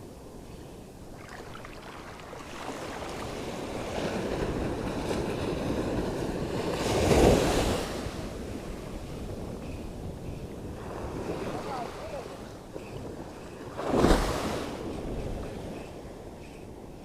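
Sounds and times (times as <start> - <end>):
wind on microphone: 0.0 - 17.0
sea surf washing in: 1.0 - 16.2
wave breaking: 13.8 - 14.9.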